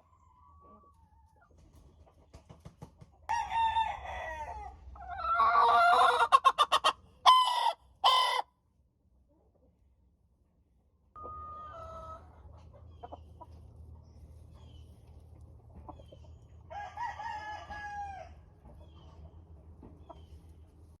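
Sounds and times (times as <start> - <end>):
hen clucking and chirping: 0.0 - 3.0, 4.9 - 8.4, 11.2 - 21.0
hen crowing: 7.3 - 8.4.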